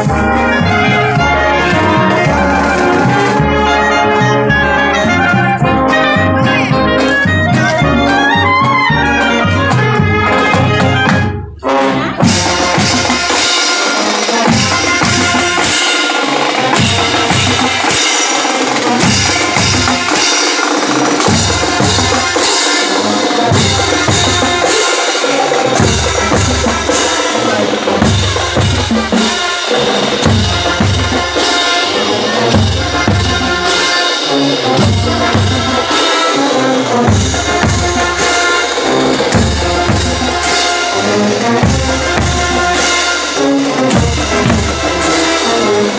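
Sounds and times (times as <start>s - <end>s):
pitched band instruments: 0.0s - 45.9s
snare drums: 0.0s - 45.9s
bass drums: 16.3s - 22.4s, 39.2s - 45.1s.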